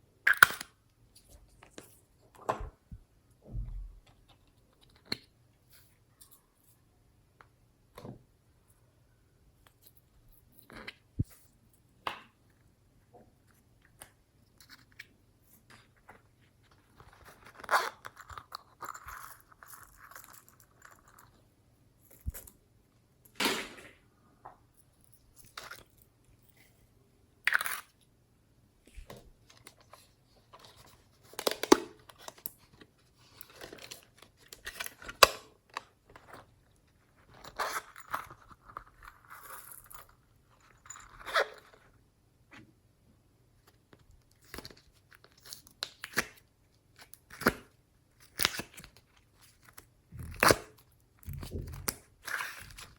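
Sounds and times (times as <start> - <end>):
slime squishing and crackling: 49.7 - 52.9.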